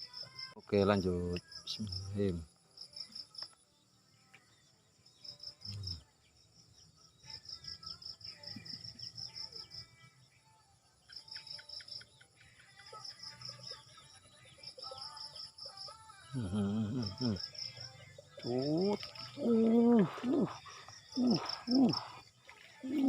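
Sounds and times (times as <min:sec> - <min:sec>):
insects chirping: 0:00.0 - 0:23.0
birds calling: 0:16.2 - 0:23.0.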